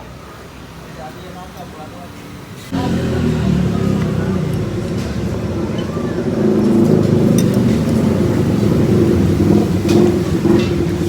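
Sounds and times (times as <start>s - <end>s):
road traffic: 0.0s - 11.0s
vehicle engine running: 2.7s - 11.0s.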